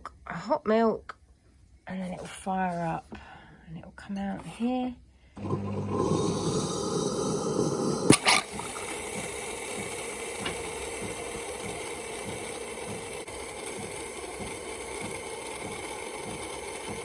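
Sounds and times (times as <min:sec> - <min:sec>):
coffee machine frothing milk: 0:05.4 - 0:17.0.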